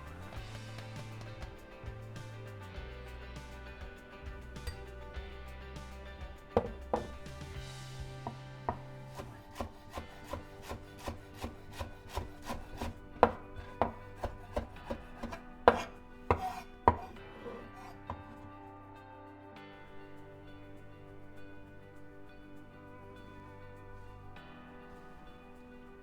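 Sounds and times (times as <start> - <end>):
background music: 0.0 - 26.0
knife chopping on cutting board: 8.7 - 17.1.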